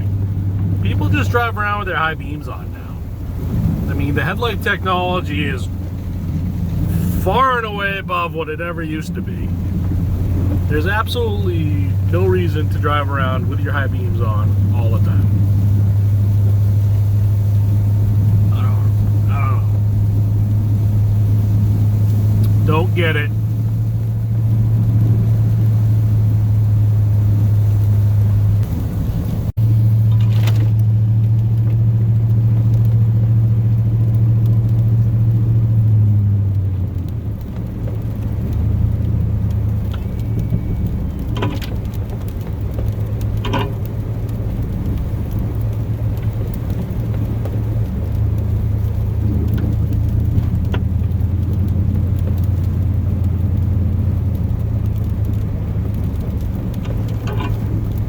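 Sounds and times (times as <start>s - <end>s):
truck engine droning: 0.0s - 58.0s.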